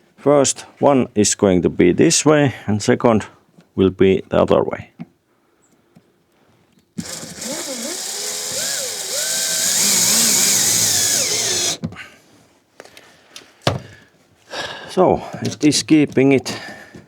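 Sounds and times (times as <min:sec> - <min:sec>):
cordless drill whining: 0:07.0 - 0:11.8.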